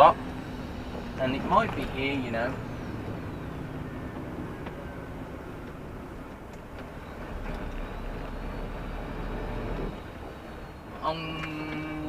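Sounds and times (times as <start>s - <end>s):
lorry engine and road rumble: 0.0s - 12.0s.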